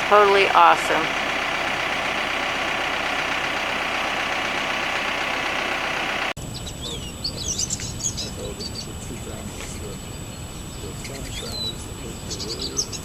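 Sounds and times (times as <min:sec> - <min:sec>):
loader engine running: 0:00.0 - 0:06.4
small birds chirping: 0:00.0 - 0:13.0.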